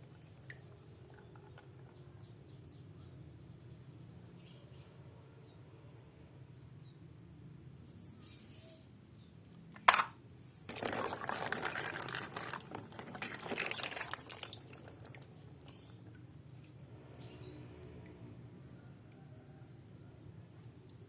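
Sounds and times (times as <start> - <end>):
rustling and crinkling handling: 9.8 - 15.0.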